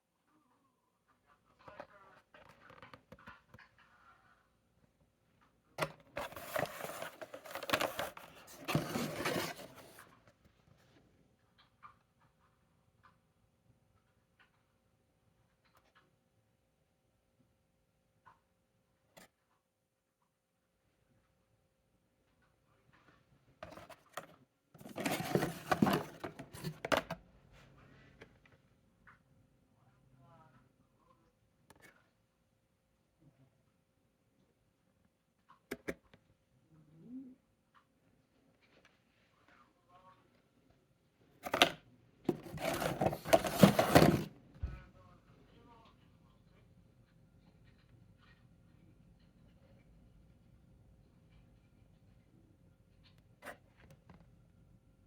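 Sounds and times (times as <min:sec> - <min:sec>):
cardboard rubbing and scraping: 0:06.2 - 0:10.0, 0:24.8 - 0:26.8, 0:42.3 - 0:44.3.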